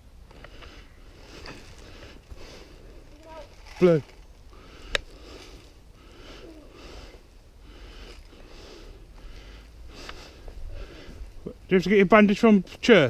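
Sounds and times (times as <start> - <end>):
person heavy breathing: 0.3 - 3.4, 4.5 - 11.5.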